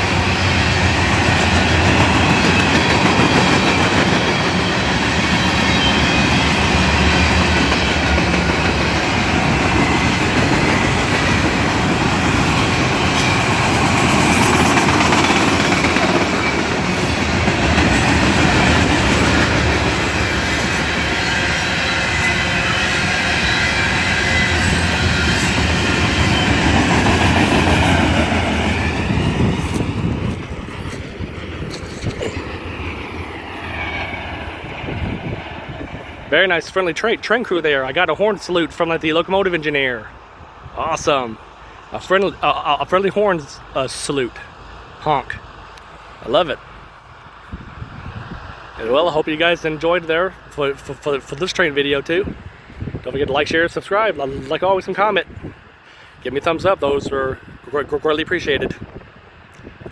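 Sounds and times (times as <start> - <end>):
train wheels clacking: 0.0 - 36.2
train wheels rumbling on rail: 0.0 - 59.9.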